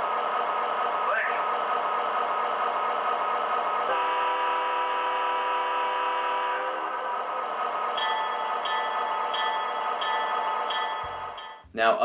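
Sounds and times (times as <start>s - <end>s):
diesel engine sound: 0.0s - 11.6s
multi-note locomotive horn: 3.9s - 7.0s
locomotive bell ringing: 8.0s - 11.7s.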